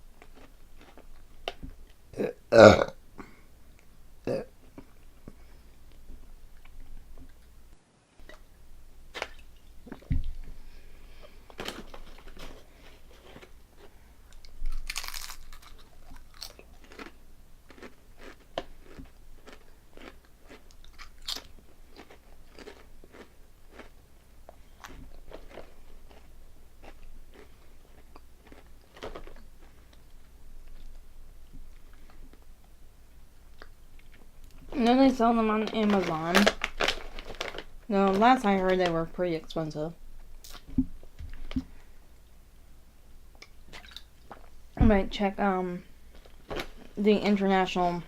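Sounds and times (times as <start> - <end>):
chips crunching while chewed: 0.2 - 1.7, 11.4 - 24.0, 24.8 - 30.1, 35.6 - 38.9.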